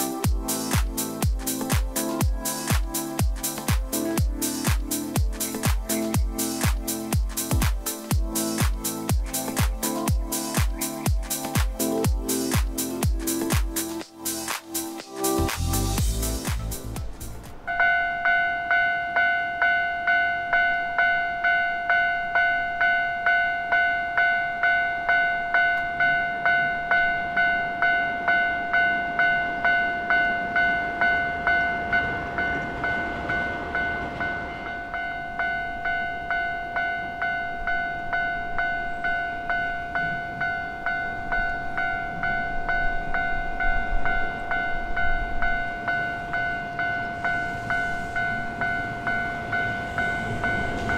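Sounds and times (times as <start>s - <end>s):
railway crossing warning bell: 0.0s - 50.9s
train rushing past: 29.2s - 36.4s, 41.1s - 50.9s.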